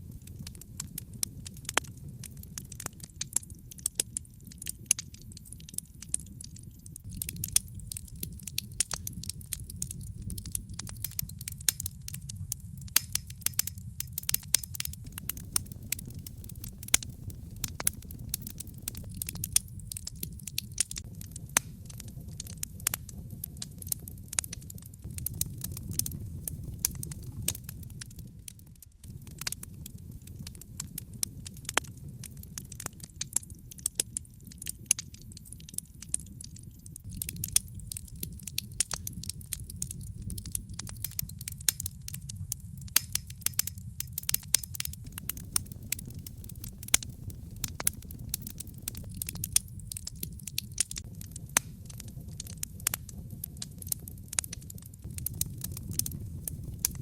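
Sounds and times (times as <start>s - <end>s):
fire crackling and popping: 0.0s - 57.0s
low rumble of flames: 0.0s - 57.0s.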